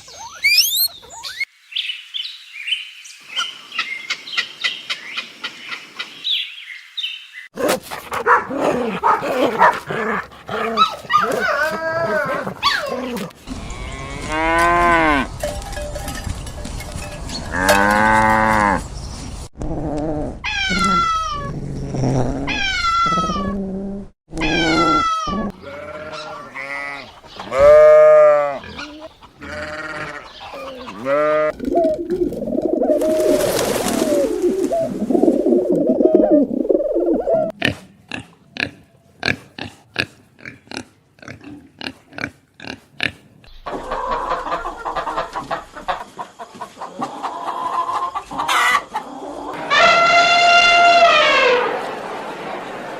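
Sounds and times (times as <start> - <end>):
farm animal calls: 24.3 - 33.4, 43.6 - 51.7.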